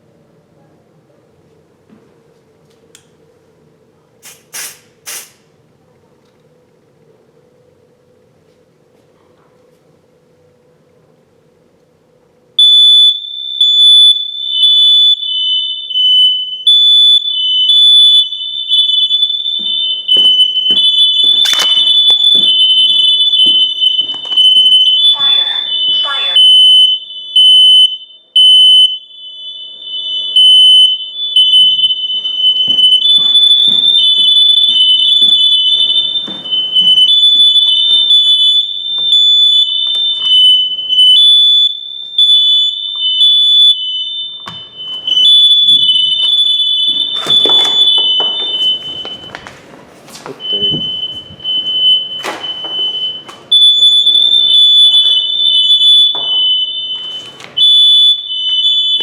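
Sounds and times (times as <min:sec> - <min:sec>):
smoke alarms beeping: 0:12.5 - 0:59.0.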